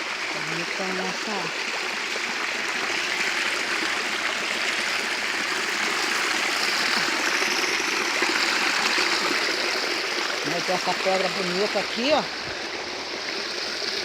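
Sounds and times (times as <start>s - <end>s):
small waterfall splashing: 0.0s - 14.0s.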